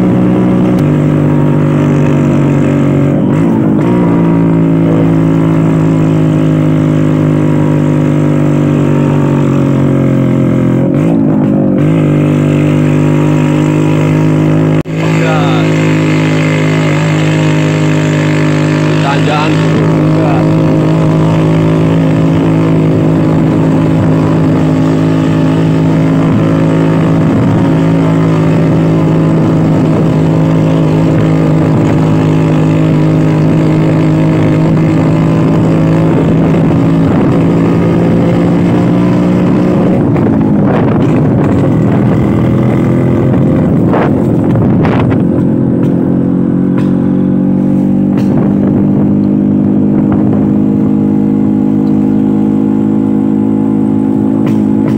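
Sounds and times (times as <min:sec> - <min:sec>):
two-stroke scooter engine: 0:00.0 - 0:38.2.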